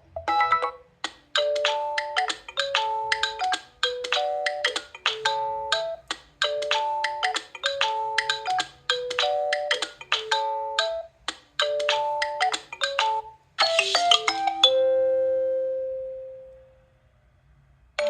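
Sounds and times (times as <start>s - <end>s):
electronic phone ringtone melody: 0.2s - 0.8s, 1.4s - 16.5s.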